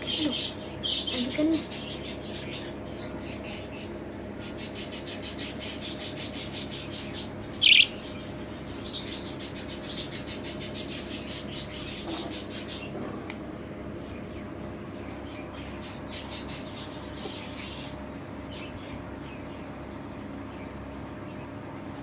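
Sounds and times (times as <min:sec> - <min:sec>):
budgerigars chirping: 0:00.0 - 0:12.9, 0:15.3 - 0:19.4.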